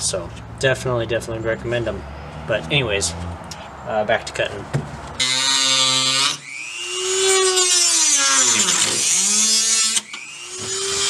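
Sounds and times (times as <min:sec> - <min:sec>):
power tool cutting metal: 0:05.2 - 0:11.0.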